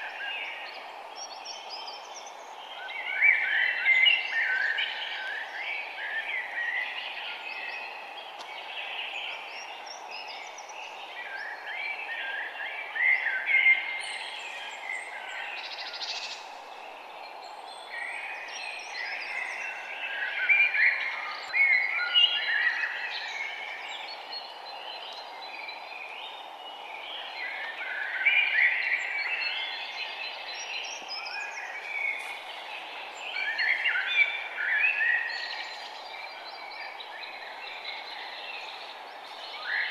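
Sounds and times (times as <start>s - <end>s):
forest birds chirping and trilling: 0.0s - 39.9s
steady background hiss: 0.0s - 39.9s.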